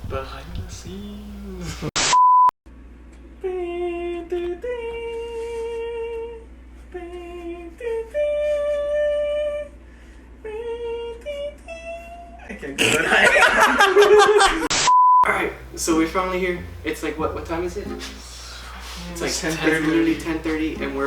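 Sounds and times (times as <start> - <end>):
person humming: 0.8 - 1.9, 10.4 - 12.6, 18.1 - 20.8
loud high beep: 14.7 - 15.3.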